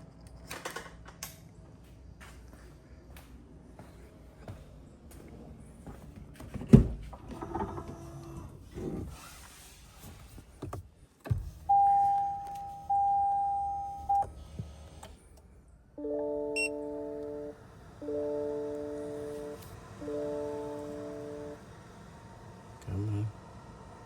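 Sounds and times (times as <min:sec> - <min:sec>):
long electronic tones: 0:16.0 - 0:21.6.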